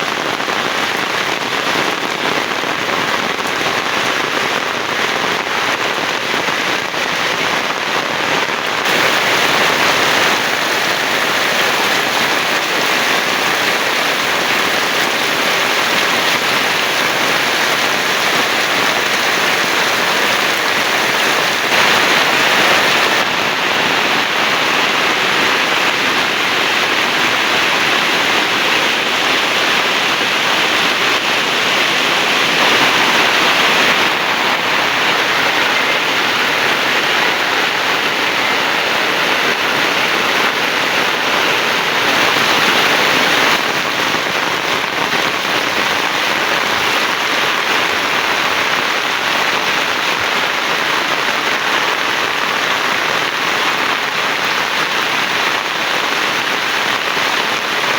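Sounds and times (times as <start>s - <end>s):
heavy rain: 0.0s - 57.9s.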